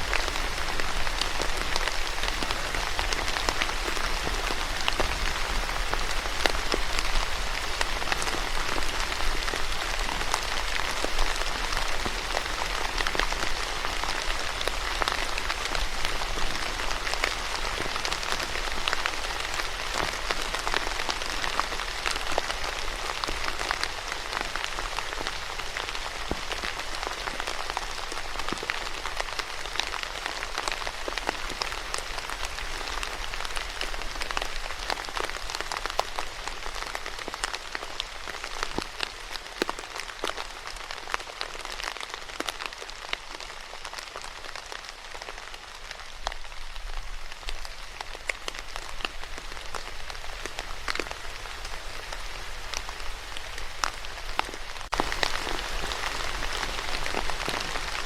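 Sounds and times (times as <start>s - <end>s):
raindrop ticks: 0.0s - 45.4s
steady rain falling: 0.0s - 58.0s.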